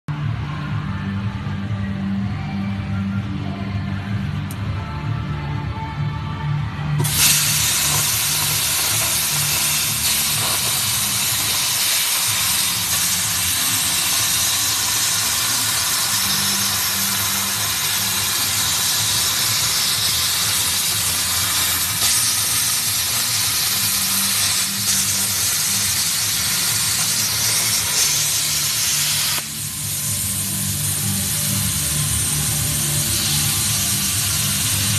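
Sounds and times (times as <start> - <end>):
plasma cutting torch hissing: 7.0 - 34.9.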